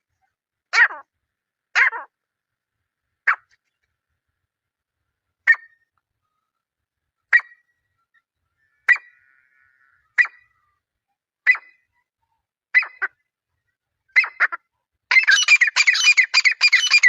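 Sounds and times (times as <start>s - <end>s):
francolin calling: 15.1s - 17.0s.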